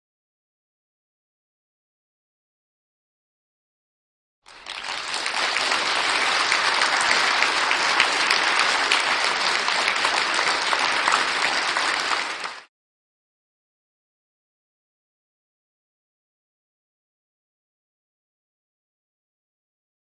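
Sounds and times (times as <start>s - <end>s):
crowd clapping: 4.5s - 12.7s.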